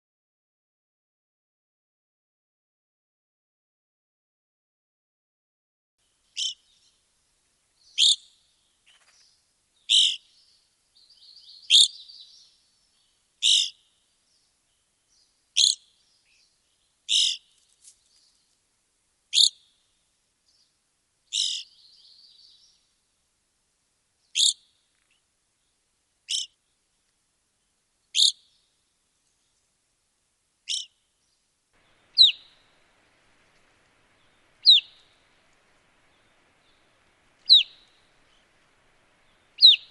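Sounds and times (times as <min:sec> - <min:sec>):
bird giving high calls: 0:06.4 - 0:06.6, 0:09.9 - 0:10.3, 0:11.6 - 0:12.3, 0:13.4 - 0:13.8, 0:15.6 - 0:15.8, 0:17.1 - 0:17.4, 0:19.4 - 0:19.6, 0:21.3 - 0:21.8, 0:26.3 - 0:26.5, 0:30.7 - 0:31.0, 0:31.9 - 0:32.8, 0:34.2 - 0:35.2, 0:37.5 - 0:38.2, 0:39.6 - 0:39.9.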